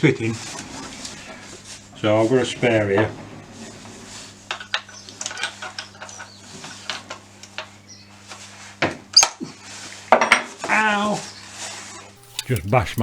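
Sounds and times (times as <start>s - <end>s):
metal fitting clicks and scrapes: 12.2s - 13.0s.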